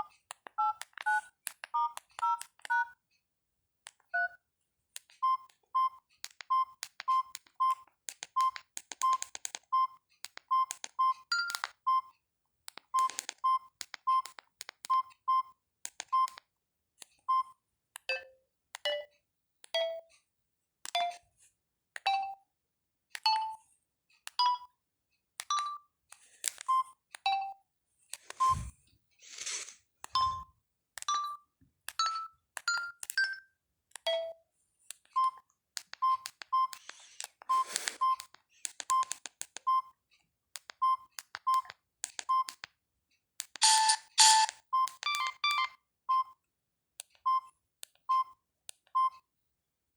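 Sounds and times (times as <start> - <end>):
phone ringtone beeping melody: 30.2 - 30.4, 43.6 - 45.7.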